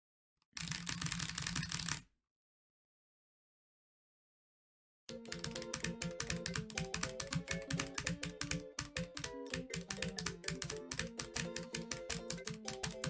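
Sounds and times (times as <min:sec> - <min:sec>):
fast sharp clicks: 0:05.1 - 0:13.0
music with held notes: 0:05.1 - 0:13.0.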